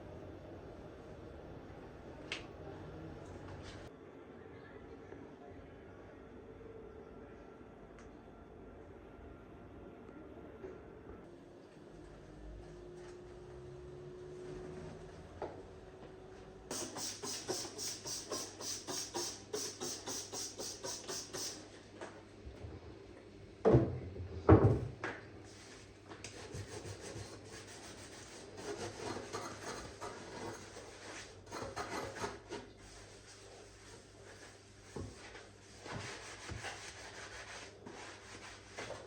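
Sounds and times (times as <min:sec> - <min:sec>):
scrubbing bathroom surface: 0:32.9 - 0:39.0.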